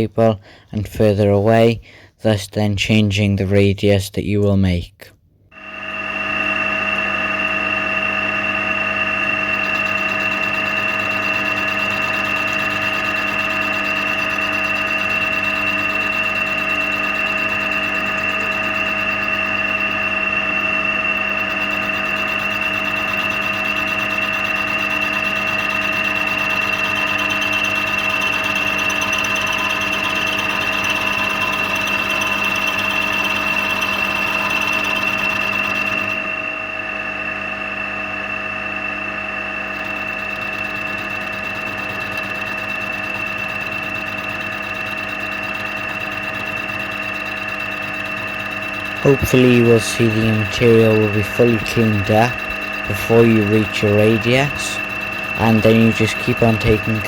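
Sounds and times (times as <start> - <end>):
milling machine whining: 5.6 - 57.0.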